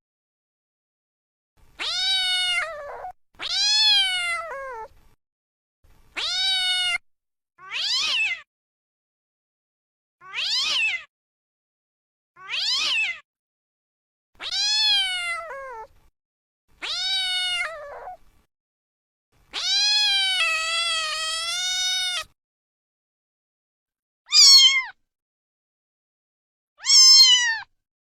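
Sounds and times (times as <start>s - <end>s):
cat meowing: 1.8s - 4.9s, 6.2s - 7.0s, 7.6s - 8.5s, 10.2s - 11.1s, 12.4s - 13.2s, 14.4s - 15.9s, 16.8s - 18.2s, 19.5s - 22.4s, 24.3s - 25.0s, 26.8s - 27.7s.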